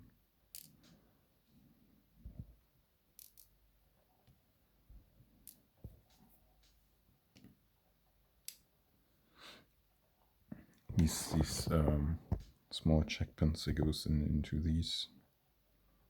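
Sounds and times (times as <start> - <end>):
small metal pins clicking: 0.5 - 0.9, 3.2 - 3.6.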